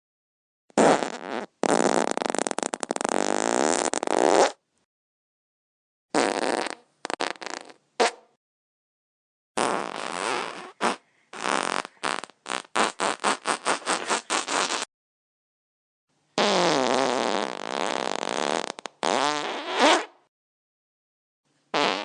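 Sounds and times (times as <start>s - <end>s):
wet farts: 0.8s - 4.6s, 6.1s - 8.2s, 9.6s - 14.9s, 16.4s - 20.2s, 21.7s - 22.0s.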